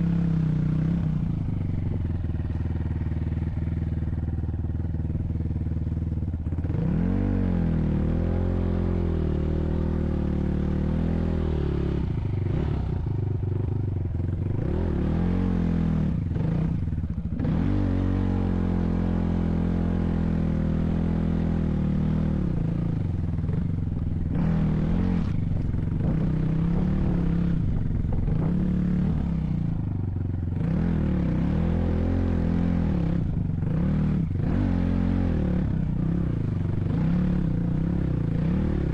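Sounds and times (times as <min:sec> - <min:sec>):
vehicle engine revving: 0:06.5 - 0:13.4, 0:14.2 - 0:38.9.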